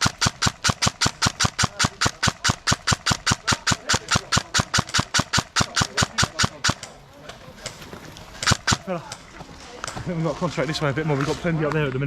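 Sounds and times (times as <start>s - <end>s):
airsoft gun firing: 0.0s - 7.0s, 8.4s - 9.0s.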